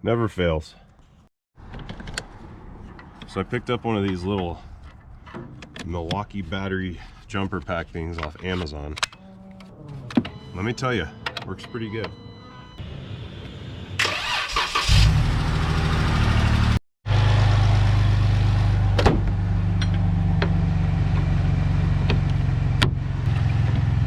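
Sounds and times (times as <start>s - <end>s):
car engine cranking: 14.0s - 16.8s.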